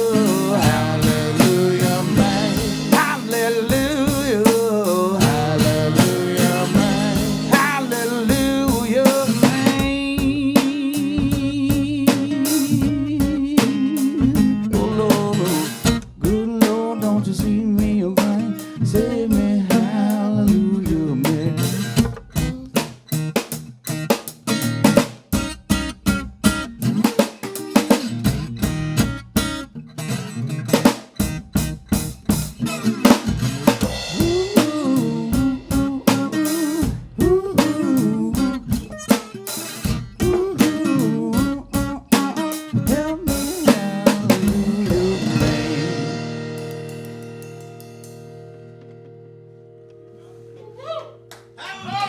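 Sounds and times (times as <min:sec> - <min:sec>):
snare drum hits: 0:00.0 - 0:09.8
band playing: 0:00.0 - 0:10.5, 0:33.4 - 0:48.9
guitar lines: 0:00.0 - 0:17.3, 0:19.8 - 0:52.0.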